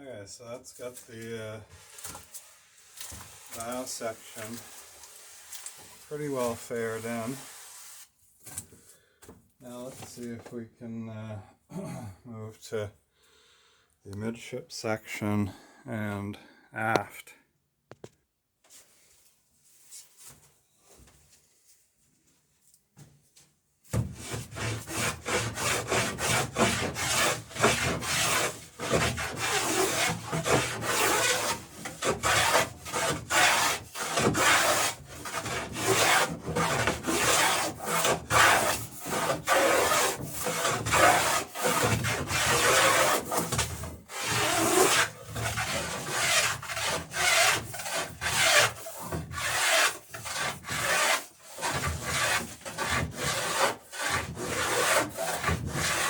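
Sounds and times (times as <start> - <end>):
hand tool rasping wooden plank: 24.2 - 56.0.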